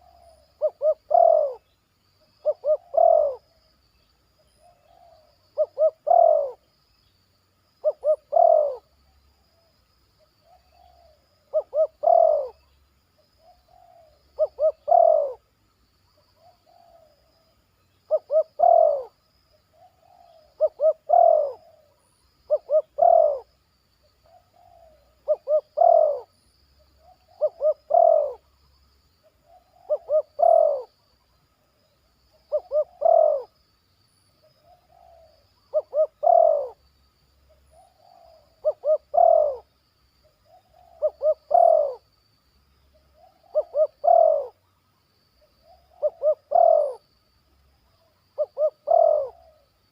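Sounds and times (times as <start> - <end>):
dove cooing: 0.0 - 1.7, 2.4 - 3.6, 4.6 - 6.6, 7.8 - 9.0, 10.4 - 12.7, 13.4 - 15.4, 16.4 - 17.5, 18.1 - 23.5, 24.2 - 26.4, 27.0 - 28.5, 29.2 - 31.0, 32.3 - 33.6, 34.5 - 36.8, 37.5 - 39.7, 40.4 - 42.1, 43.0 - 44.7, 45.6 - 47.0, 47.8 - 49.9.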